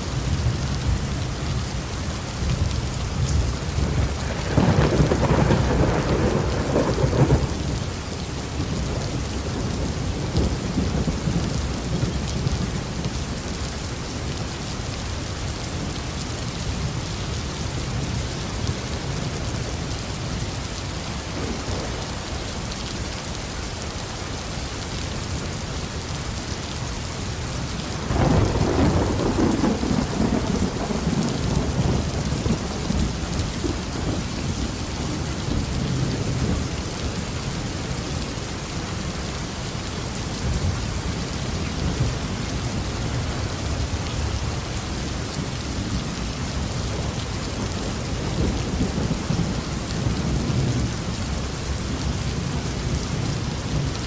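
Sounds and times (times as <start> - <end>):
heavy rain falling: 0.0 - 54.0
thunder clap rumbling: 3.3 - 7.8, 28.0 - 36.7.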